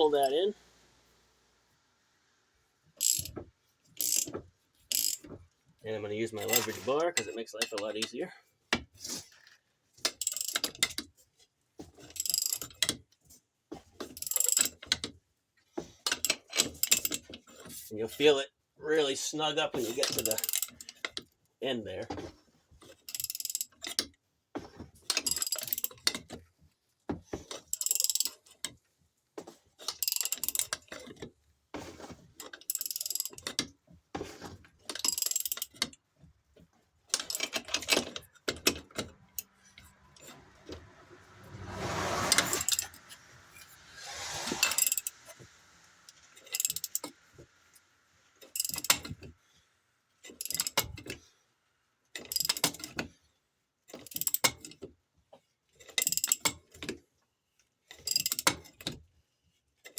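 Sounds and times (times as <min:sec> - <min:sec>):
ratchet wrench clicking: 0:03.0 - 0:03.3, 0:04.0 - 0:04.3, 0:04.9 - 0:05.2.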